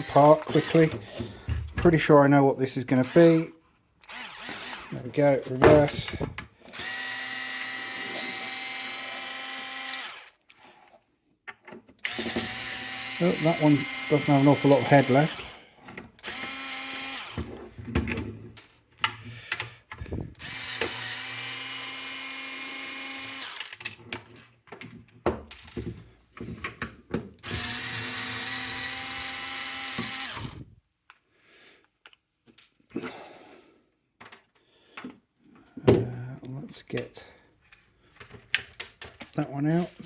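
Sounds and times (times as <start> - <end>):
electric screwdriver whirring: 0.0 - 1.2, 4.0 - 5.0, 6.7 - 10.4, 12.0 - 15.6, 16.2 - 17.5, 20.2 - 23.8, 27.4 - 30.7.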